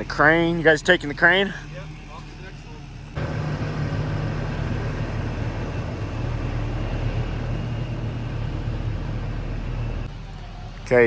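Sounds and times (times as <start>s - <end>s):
crane engine rumbling: 3.2s - 10.1s.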